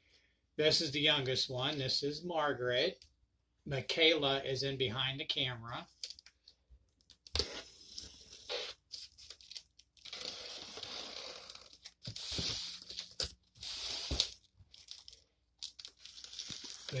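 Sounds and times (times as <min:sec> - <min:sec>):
packing tape tearing: 0:08.5 - 0:17.0
cardboard rustling: 0:09.0 - 0:17.0.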